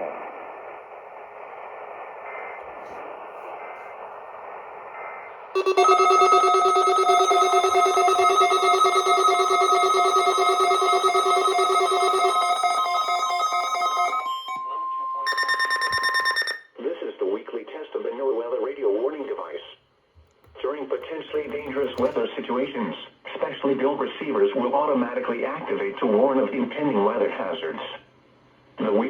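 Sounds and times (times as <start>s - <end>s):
radio static: 0.0s - 14.0s
trilling electronic alert tone: 5.6s - 14.6s
steady high tone: 5.6s - 16.6s.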